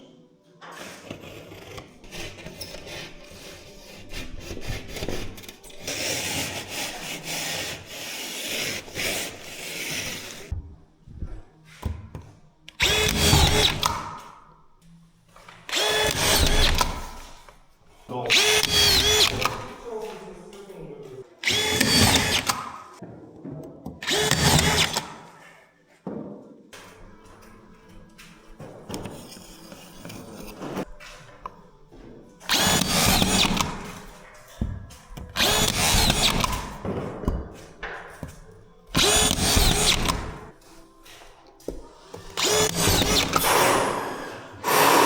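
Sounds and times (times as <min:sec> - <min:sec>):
power drill spinning: 0:01.0 - 0:10.5, 0:12.7 - 0:14.3, 0:15.5 - 0:17.6, 0:18.3 - 0:20.4, 0:21.0 - 0:22.8, 0:24.0 - 0:25.2, 0:28.6 - 0:34.6, 0:35.2 - 0:40.6, 0:41.7 - 0:45.0
electric drill motor whine: 0:12.8 - 0:14.1, 0:15.7 - 0:17.3, 0:18.3 - 0:19.7, 0:21.4 - 0:22.6, 0:24.0 - 0:25.0, 0:32.5 - 0:34.0, 0:35.4 - 0:36.8, 0:39.0 - 0:40.5, 0:42.2 - 0:45.0.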